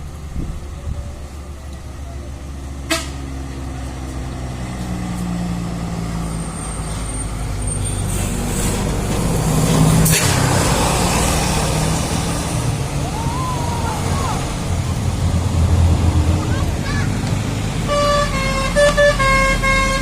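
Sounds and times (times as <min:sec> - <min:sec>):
bus diesel engine running: 0:00.0 - 0:20.0
air brakes hissing: 0:06.6 - 0:09.2.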